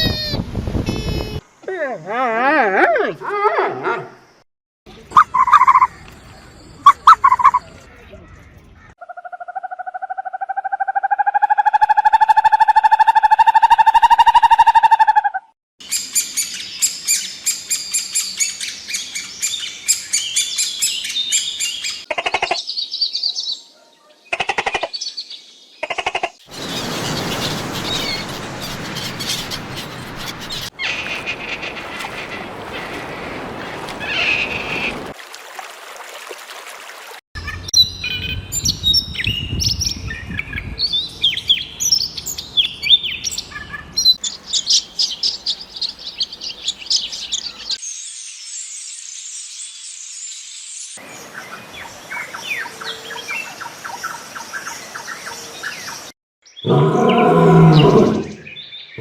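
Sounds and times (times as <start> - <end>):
birds chirping: 4.1 - 9.0, 26.5 - 35.0, 54.9 - 59.0.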